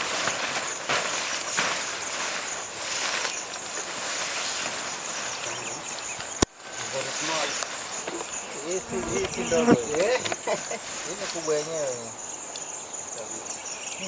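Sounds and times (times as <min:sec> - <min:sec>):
steady hiss: 0:00.0 - 0:13.6
high insect drone: 0:04.4 - 0:14.0
soft rustling knocks: 0:08.2 - 0:10.4.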